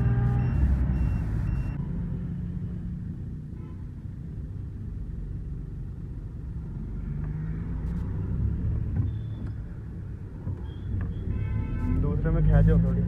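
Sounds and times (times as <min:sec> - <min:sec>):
diesel engine rumble: 0:00.0 - 0:03.4
road noise: 0:00.0 - 0:13.0.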